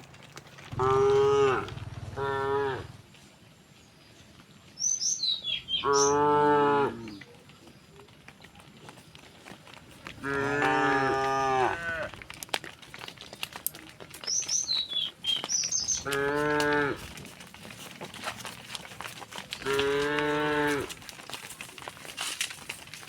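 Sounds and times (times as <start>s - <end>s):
cattle mooing: 0.7s - 3.0s, 10.2s - 12.2s, 16.0s - 17.0s, 19.6s - 21.0s.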